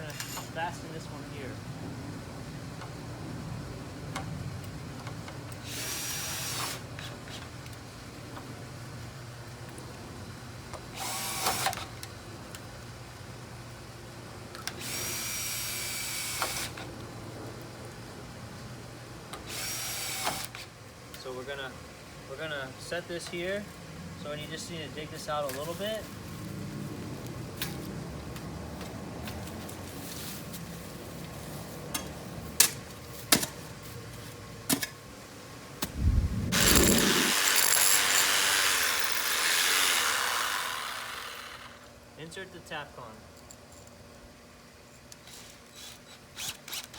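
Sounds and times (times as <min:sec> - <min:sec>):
hand tool digging soil: 0:36.5 - 0:39.6
cordless drill whining: 0:36.6 - 0:41.9, 0:45.2 - 0:46.9.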